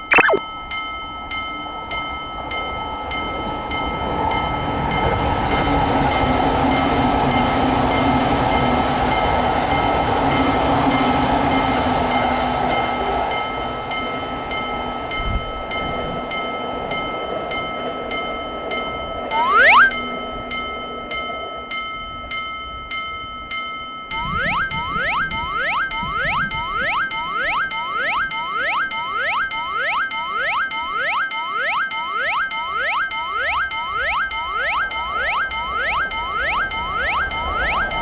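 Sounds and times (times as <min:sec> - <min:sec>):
level crossing bell ringing: 0:24.1 - 0:38.0.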